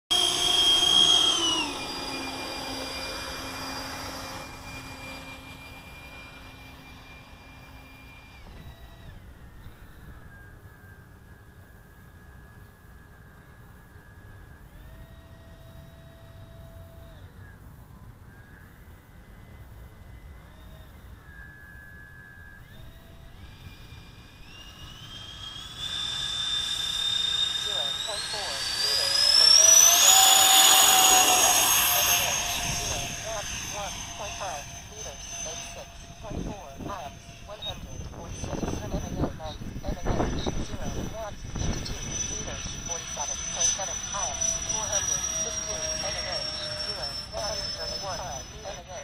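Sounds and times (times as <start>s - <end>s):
electric ducted fans whining: 0.1s - 49.0s
wind rumble on microphone: 36.2s - 42.9s.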